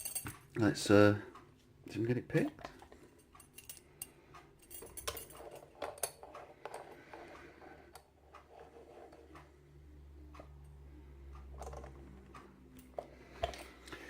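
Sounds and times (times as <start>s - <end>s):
padlock and picks clicking: 3.3s - 6.8s.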